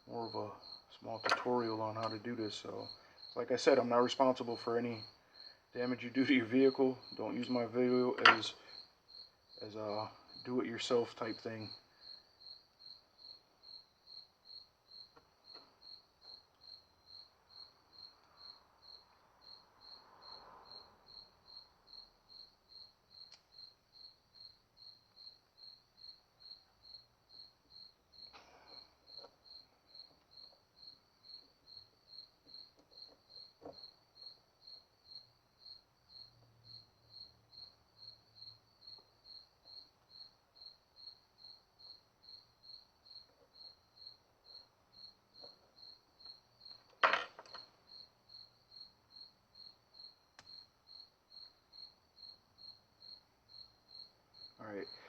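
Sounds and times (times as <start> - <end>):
cricket chirping: 0.0 - 55.0
faint clicks: 50.4 - 50.6.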